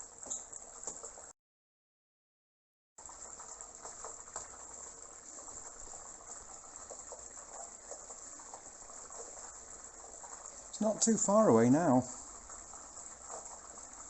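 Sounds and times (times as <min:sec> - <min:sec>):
water rushing through hose: 0:03.0 - 0:14.0.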